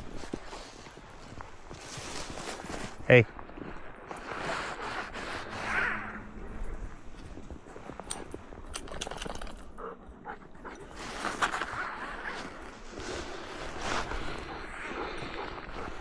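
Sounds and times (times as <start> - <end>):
footsteps crunching in snow: 0.0 - 8.7, 10.5 - 16.0
dog snuffling and breathing: 3.6 - 16.0.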